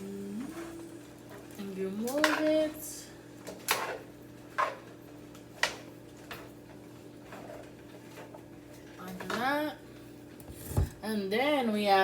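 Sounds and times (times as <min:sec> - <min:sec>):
steady low hum: 0:00.0 - 0:02.1.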